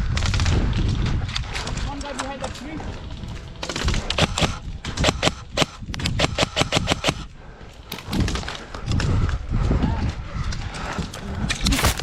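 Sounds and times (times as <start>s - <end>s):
airsoft rifles firing: 1.9s - 8.5s.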